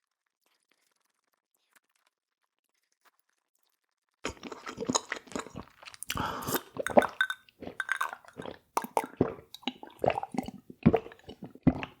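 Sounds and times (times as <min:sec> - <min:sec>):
chewing crunchy food: 0:02.7 - 0:12.0.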